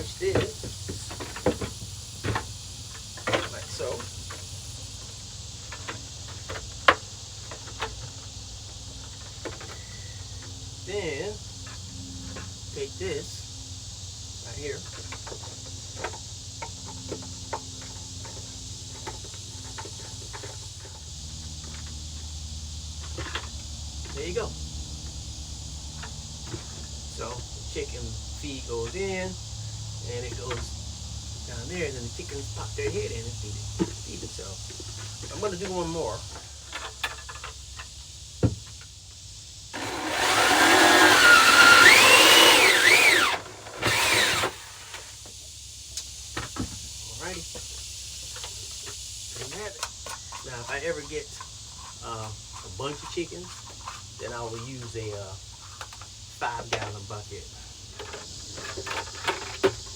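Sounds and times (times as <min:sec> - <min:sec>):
power drill cutting plastic: 0:39.8 - 0:45.1.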